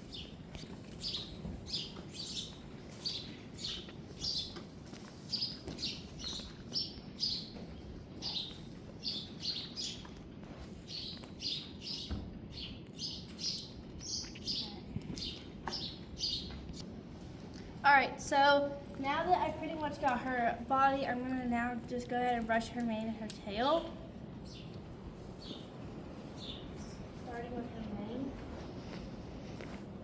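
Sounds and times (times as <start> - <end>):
small bird chirping: 0.0 - 4.6, 8.2 - 10.2, 10.9 - 16.8, 25.4 - 27.5
low steady background rumble: 0.0 - 30.0.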